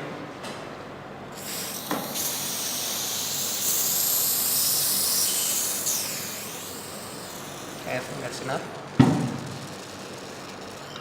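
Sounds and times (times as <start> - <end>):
aerosol can spraying hiss: 1.4 - 7.8.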